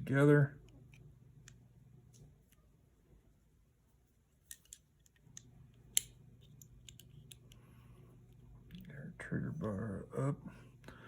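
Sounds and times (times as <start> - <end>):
metal clicks of pistol parts: 4.4 - 7.6.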